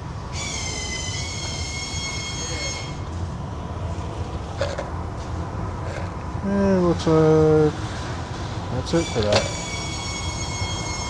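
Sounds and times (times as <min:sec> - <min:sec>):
steady low hum: 0:00.0 - 0:10.6
high-pitched squeal: 0:00.3 - 0:03.2, 0:08.9 - 0:11.0.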